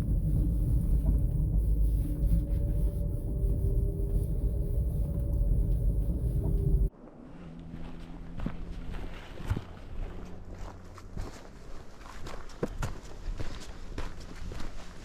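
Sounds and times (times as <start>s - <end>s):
ice humming tones: 0.0s - 6.9s.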